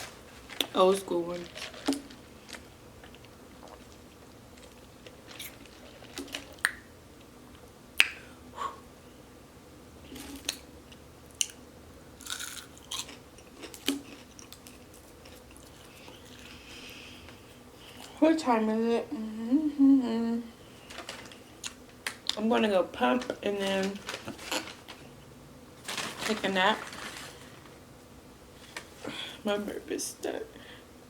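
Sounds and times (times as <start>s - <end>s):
close chewing mouth sounds: 12.2s - 16.6s.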